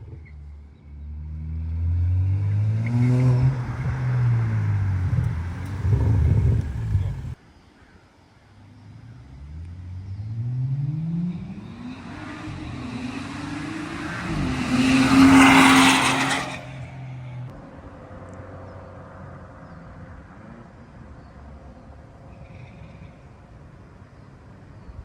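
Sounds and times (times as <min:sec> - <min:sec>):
car accelerating hard past: 0:01.1 - 0:07.4, 0:09.4 - 0:17.5.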